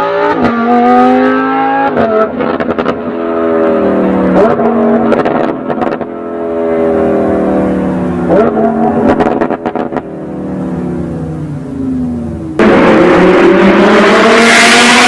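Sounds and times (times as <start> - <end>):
sports car engine revving: 0.0 - 15.0
exhaust crackles and pops: 8.4 - 10.0.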